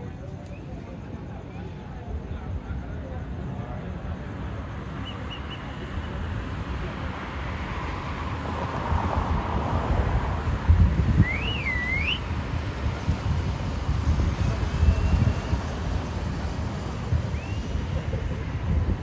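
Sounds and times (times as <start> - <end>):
wind buffeting microphone: 6.9 - 19.0
swooping whistled note: 11.2 - 12.3.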